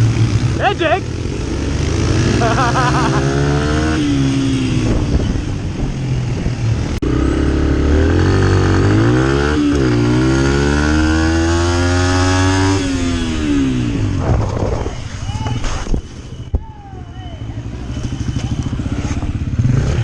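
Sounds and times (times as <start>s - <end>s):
dirt bike engine revving: 0.0s - 5.5s, 7.0s - 15.2s, 17.4s - 20.0s
wind noise: 3.8s - 7.0s, 12.6s - 16.8s.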